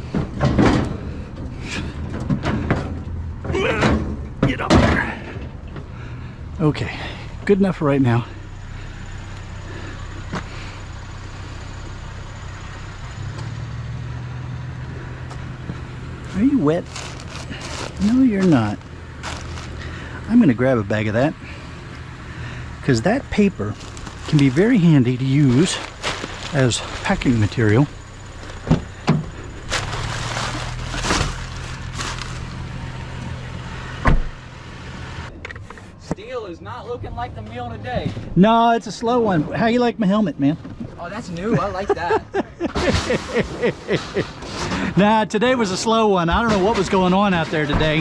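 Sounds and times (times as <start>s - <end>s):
sharp knocks and clunks: 0.0s - 5.9s, 28.5s - 29.9s
engine idling with low hum: 0.0s - 48.0s.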